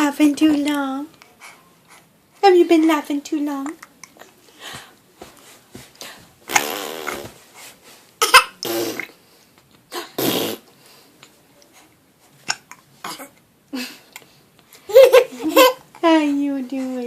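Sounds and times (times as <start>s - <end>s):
baby growling with hiccups: 8.2s - 9.2s, 12.4s - 13.4s.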